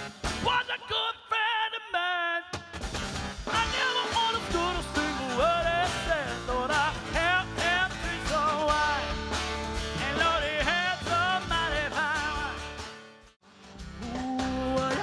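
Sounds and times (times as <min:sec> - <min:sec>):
strummed acoustic guitar: 0:00.0 - 0:00.6, 0:02.6 - 0:15.0
person singing: 0:03.5 - 0:09.3, 0:09.9 - 0:12.8, 0:14.0 - 0:15.0.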